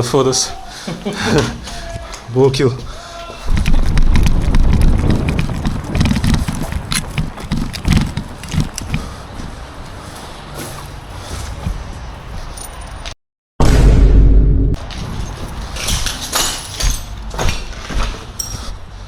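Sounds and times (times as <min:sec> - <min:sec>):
microphone handling noise: 0:03.4 - 0:12.5.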